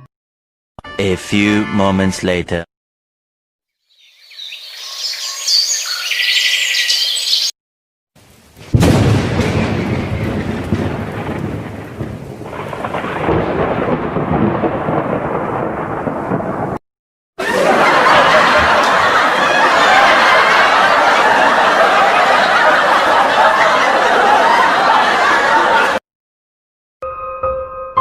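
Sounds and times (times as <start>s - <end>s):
thunder crack and rumble: 8.5s - 16.8s.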